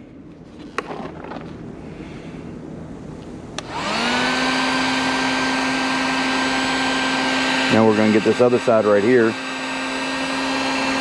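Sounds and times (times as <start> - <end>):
heat gun fan humming: 1.6 - 11.0
heat gun switch click: 3.6 - 4.0.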